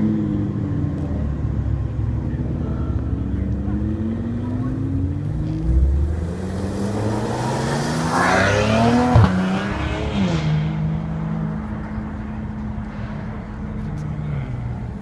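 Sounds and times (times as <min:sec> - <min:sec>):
supercar engine revving: 0:03.2 - 0:12.0.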